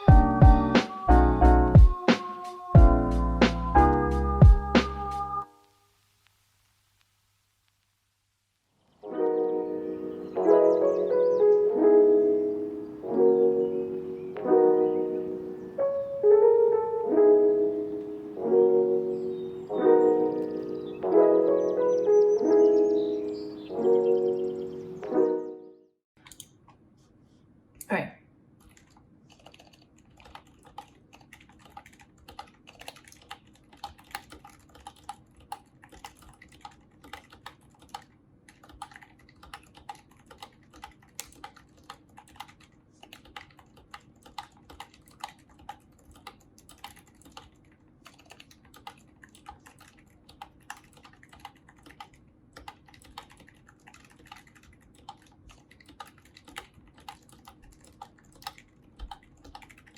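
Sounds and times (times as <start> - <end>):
soft keyboard keystrokes: 28.6 - 59.9.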